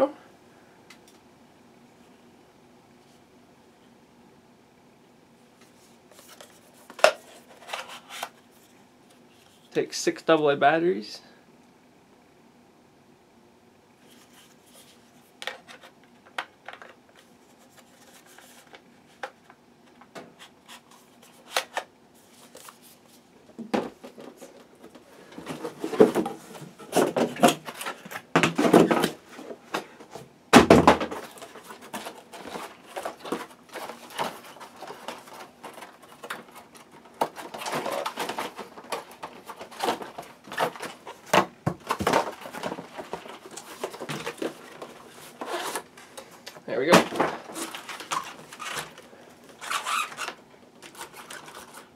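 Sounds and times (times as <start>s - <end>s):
packaging rustling and clattering: 14.1s - 51.9s.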